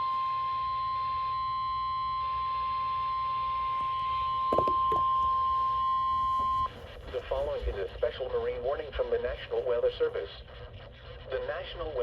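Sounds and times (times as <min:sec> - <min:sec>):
high alarm tone: 0:00.0 - 0:06.8
hiss and hum: 0:00.0 - 0:12.0.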